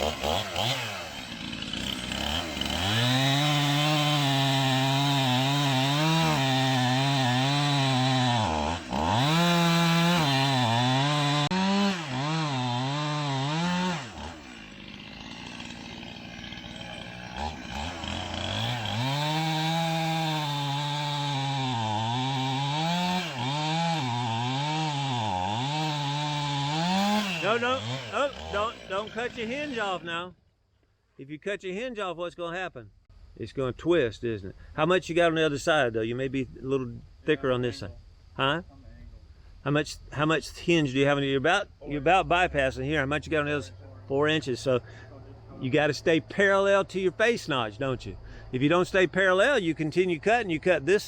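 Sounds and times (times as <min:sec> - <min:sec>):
chainsaw cutting log: 0:00.0 - 0:30.2.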